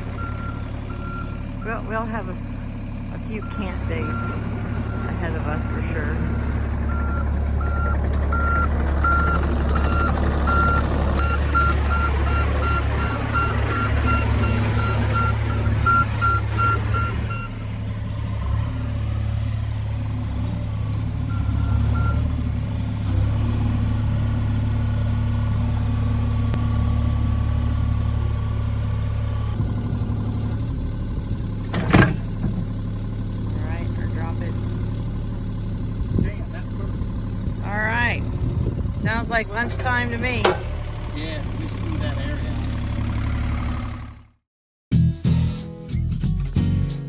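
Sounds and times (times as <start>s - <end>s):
engine running steadily: 0.0s - 44.3s
electronic warning beeps: 3.3s - 17.5s.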